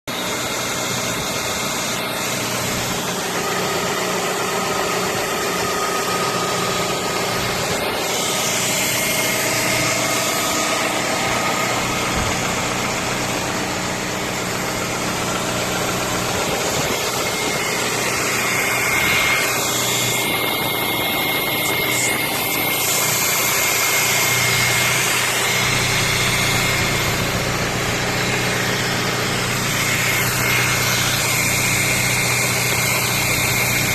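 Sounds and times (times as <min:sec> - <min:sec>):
car engine idling: 0:00.0 - 0:33.9.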